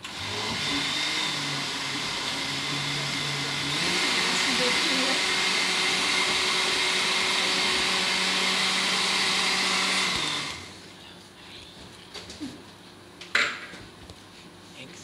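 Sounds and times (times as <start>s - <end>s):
electric blender running: 0.0s - 10.8s.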